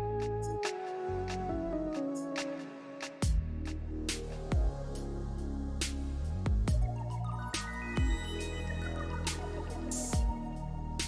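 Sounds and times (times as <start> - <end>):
electronic music: 0.0 - 11.0
deep kick drum thumps: 3.2 - 3.6, 4.5 - 4.8, 6.4 - 7.0, 8.0 - 8.2, 10.2 - 10.4.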